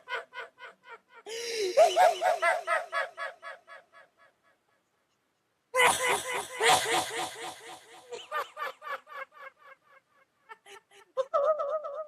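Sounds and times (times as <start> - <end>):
pitched laughter pulses: 1.3 - 4.1, 5.8 - 9.2.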